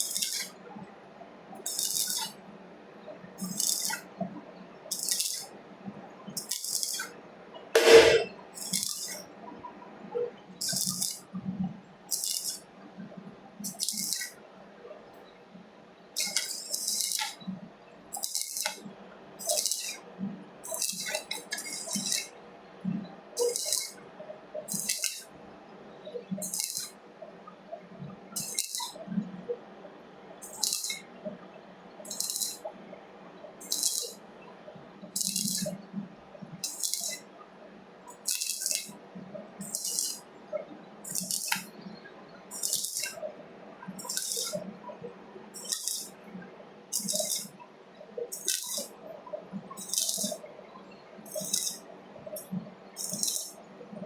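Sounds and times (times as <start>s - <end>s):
welding arc crackling: 0.0s - 0.5s, 1.7s - 2.3s, 3.4s - 4.0s, 4.9s - 5.5s, 6.4s - 7.1s, 7.8s - 9.2s, 10.6s - 11.2s, 12.1s - 12.6s, 13.7s - 14.4s, 16.2s - 17.4s, 18.2s - 18.8s, 19.4s - 20.0s, 20.7s - 22.3s, 23.4s - 24.0s, 24.7s - 25.2s, 26.4s - 26.9s, 28.4s - 29.0s, 30.4s - 31.0s, 32.1s - 32.6s, 33.6s - 34.2s, 35.2s - 35.7s, 36.6s - 37.2s, 38.1s - 38.9s, 39.6s - 40.2s, 41.1s - 41.7s, 42.5s - 43.2s, 44.0s - 44.6s, 45.6s - 46.1s, 46.9s - 47.5s, 48.3s - 49.0s, 49.8s - 50.4s, 51.3s - 51.8s, 53.0s - 53.6s.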